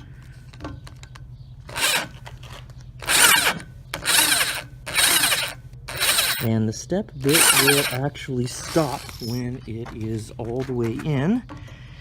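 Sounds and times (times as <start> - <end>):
drill cutting into steel: 1.7 - 2.1, 3.0 - 6.5, 7.3 - 8.0, 8.6 - 9.4.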